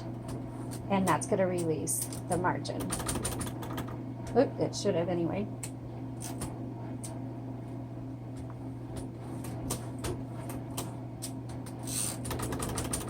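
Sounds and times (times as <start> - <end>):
steady low hum: 0.0 - 13.0
typewriter carriage clicks: 11.8 - 13.0.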